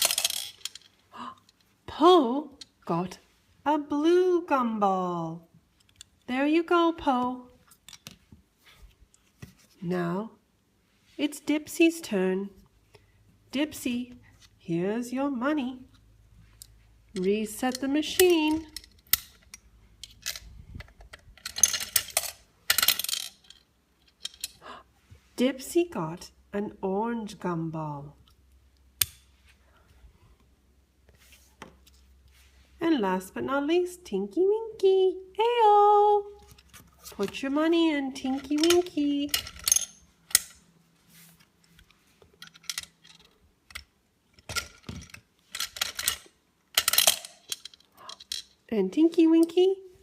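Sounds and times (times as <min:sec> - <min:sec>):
coins dropping into machine: 0:00.0 - 0:00.8
plastic parts clattering: 0:00.0 - 0:01.7, 0:17.2 - 0:24.6, 0:38.2 - 0:40.6, 0:41.7 - 0:48.6.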